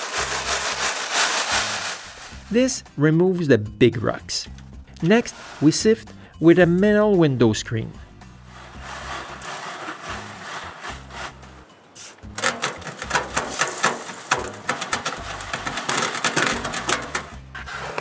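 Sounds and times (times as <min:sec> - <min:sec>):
sand sifted through metal screen: 0:00.0 - 0:02.8, 0:05.0 - 0:06.0, 0:08.4 - 0:18.0.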